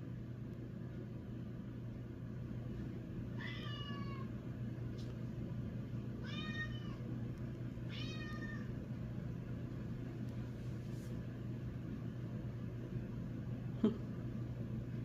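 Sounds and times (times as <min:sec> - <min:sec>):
cat meowing: 0:03.4 - 0:04.3, 0:06.2 - 0:07.0, 0:07.9 - 0:08.7.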